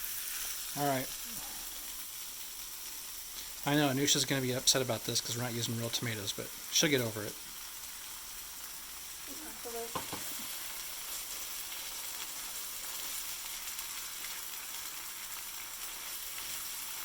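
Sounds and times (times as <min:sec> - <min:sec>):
onions frying in a pan: 0:00.0 - 0:17.0
light knock: 0:10.0 - 0:10.3.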